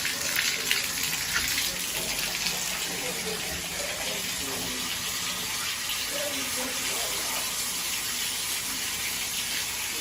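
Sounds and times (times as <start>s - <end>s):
water running from a tap: 0.0s - 10.0s.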